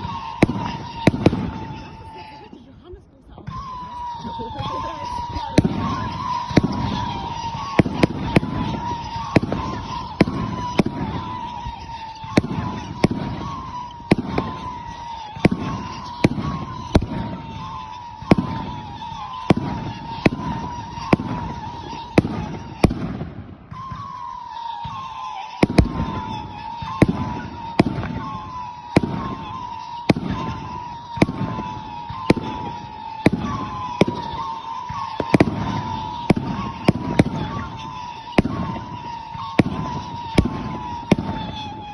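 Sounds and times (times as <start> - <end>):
fireworks bangs with echo: 0.0 - 41.9
wavering high tone: 3.5 - 22.9, 23.7 - 41.9.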